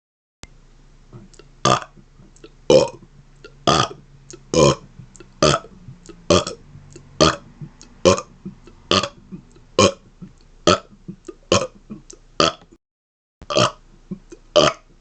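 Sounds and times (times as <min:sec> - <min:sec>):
man burping: 0:02.7 - 0:03.0, 0:03.7 - 0:05.7, 0:06.3 - 0:06.6, 0:07.2 - 0:12.7, 0:13.4 - 0:14.9.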